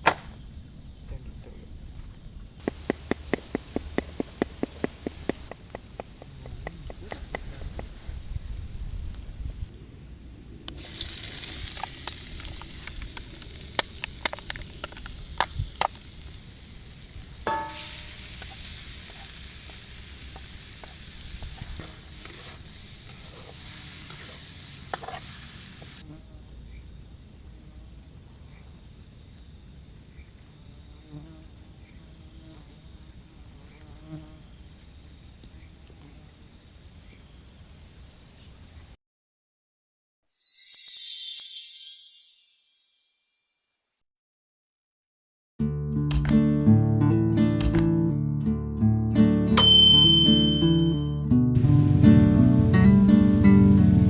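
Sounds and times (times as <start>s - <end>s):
crickets chirping: 0.0s - 39.0s, 40.3s - 43.2s, 51.6s - 54.0s
run of clicks: 2.5s - 8.0s
food sizzling in a pan: 10.8s - 26.0s.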